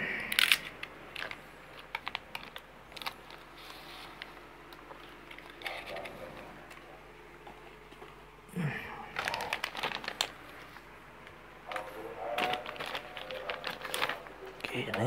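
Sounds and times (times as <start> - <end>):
faint steady hum: 0.0 - 15.0
plastic packaging rustle: 0.3 - 6.8, 9.1 - 10.9, 11.7 - 15.0.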